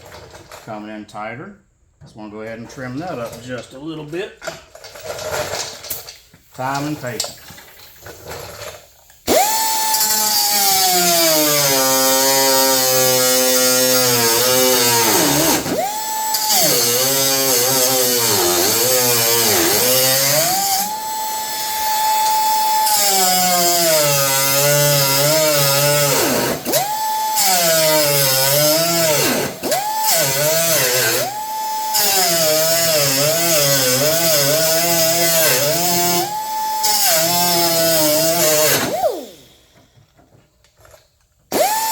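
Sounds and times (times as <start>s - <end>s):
cut-off tool whining on steel: 9.3s - 39.8s, 41.5s - 41.9s.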